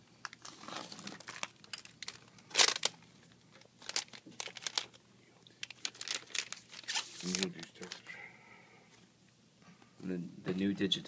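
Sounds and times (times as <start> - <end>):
plastic film crinkling: 0.2 - 8.1
plastic film ripping: 0.4 - 5.0, 5.6 - 8.0.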